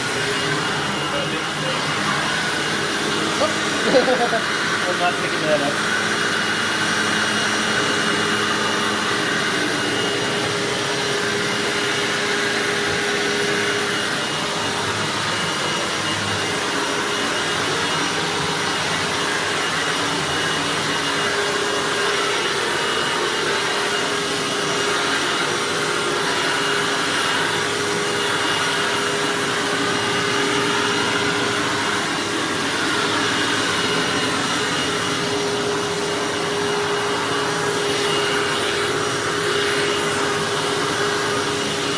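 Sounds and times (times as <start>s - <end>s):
vacuum cleaner running on carpet: 0.0s - 41.9s.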